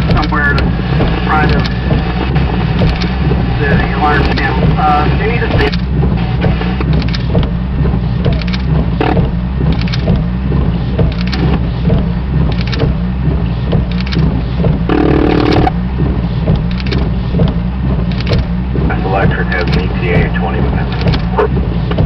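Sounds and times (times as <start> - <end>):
buzzing tone: 0.0 - 22.0
low vehicle rumble: 0.0 - 22.0.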